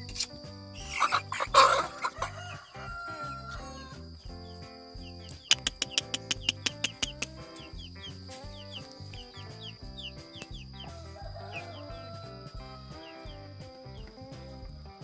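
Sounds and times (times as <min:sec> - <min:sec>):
high falling bird chirps: 0:00.0 - 0:14.4
background music with beat: 0:04.1 - 0:15.0
evenly spaced clicks: 0:05.3 - 0:07.5.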